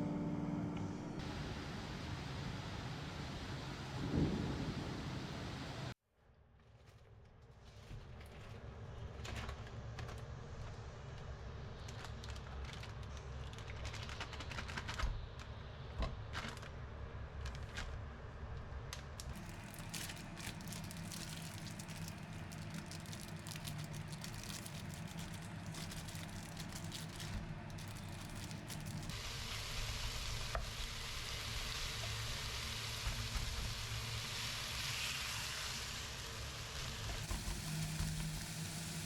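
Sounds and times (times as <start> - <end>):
low rumble: 0.0 - 1.8
food sizzling in a pan: 28.6 - 39.0.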